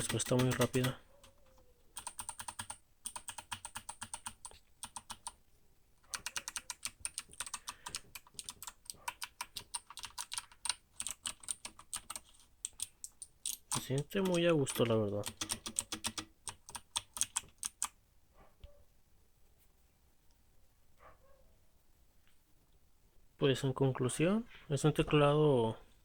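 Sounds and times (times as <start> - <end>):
computer keyboard typing: 0.0 - 1.0, 2.0 - 5.4, 6.1 - 18.0.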